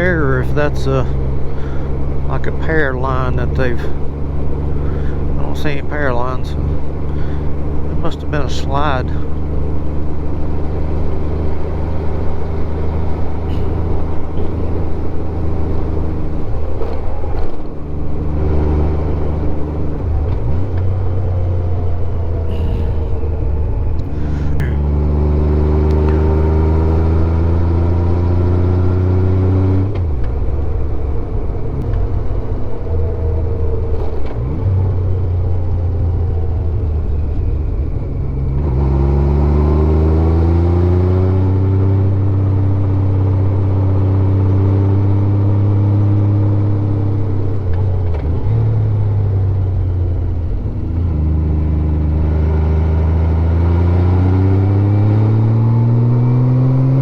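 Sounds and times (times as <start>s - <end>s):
motorcycle engine running: 0.0s - 40.5s.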